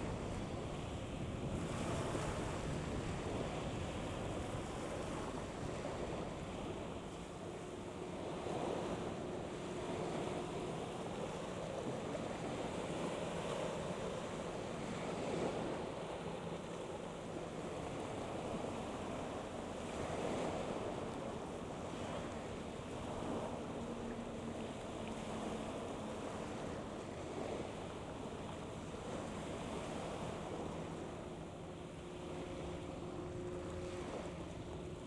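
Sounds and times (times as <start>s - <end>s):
wind buffeting microphone: 0.0s - 7.1s.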